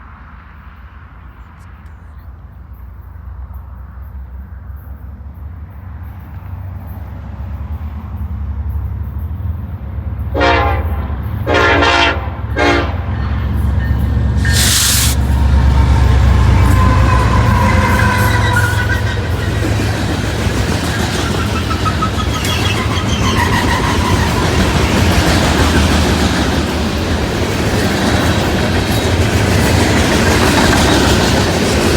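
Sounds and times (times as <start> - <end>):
rush of passing train: 0.0 - 31.9
diesel locomotive rumble: 0.1 - 31.9
train horn blasts: 10.3 - 19.8.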